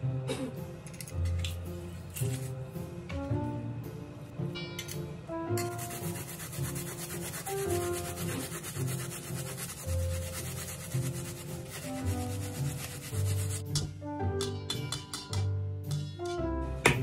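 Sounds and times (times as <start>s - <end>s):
background music: 0.0s - 17.0s
utensil scraping food: 2.1s - 2.6s, 5.6s - 13.7s.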